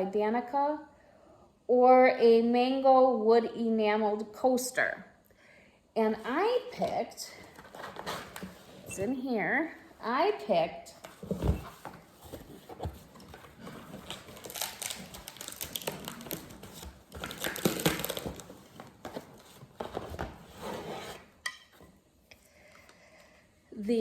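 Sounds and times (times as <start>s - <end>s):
items clicking and clattering: 11.0s - 20.4s
packing material rustling: 11.1s - 21.3s.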